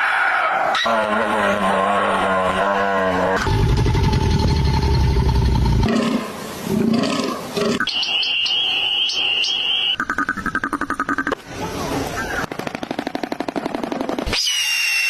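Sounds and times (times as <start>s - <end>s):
large animal roaring: 0.8s - 7.8s
high whistling tone: 7.9s - 10.0s.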